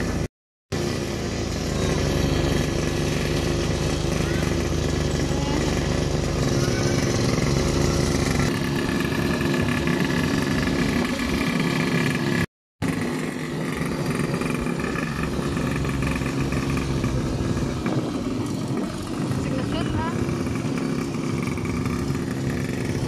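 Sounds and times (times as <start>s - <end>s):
two-stroke pocket bike engine: 0.0s - 23.0s.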